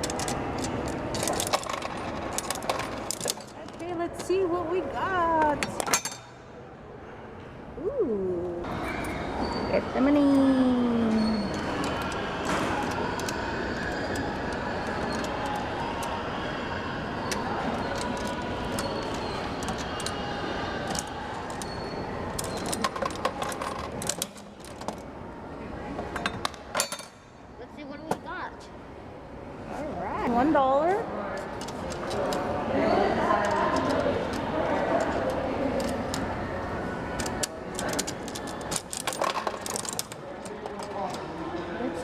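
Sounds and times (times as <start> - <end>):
coins clinking into vending machine: 0.0 - 3.7, 20.9 - 24.8
steady background hum: 0.0 - 42.0.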